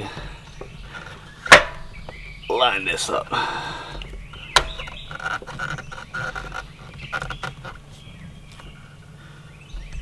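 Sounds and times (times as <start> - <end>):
metal knocks and scraping: 0.0 - 2.2, 4.1 - 8.0
short squeaks: 4.4 - 8.1.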